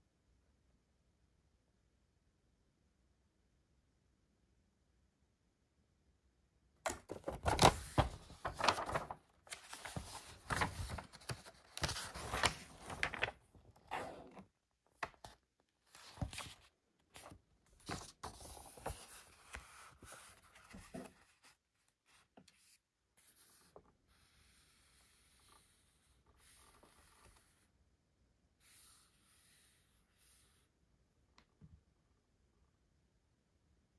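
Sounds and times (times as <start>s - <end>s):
plastic packaging rustling and tearing: 7.1s - 13.4s.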